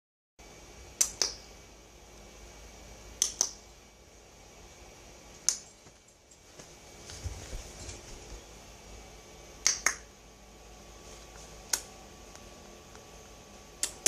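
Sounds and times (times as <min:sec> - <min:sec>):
person making mouth clicks: 0:13.8 - 0:14.0.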